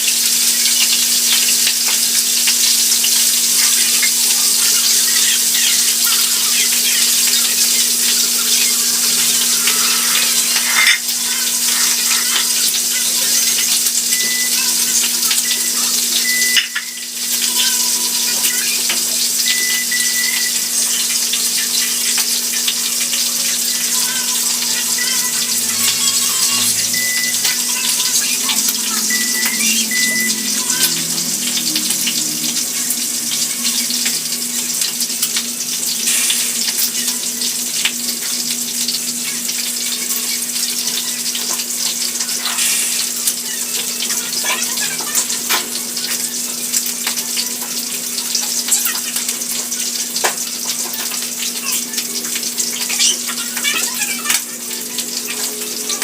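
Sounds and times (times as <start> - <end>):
food sizzling in hot oil: 0.0 - 56.0
low hum: 23.6 - 35.6.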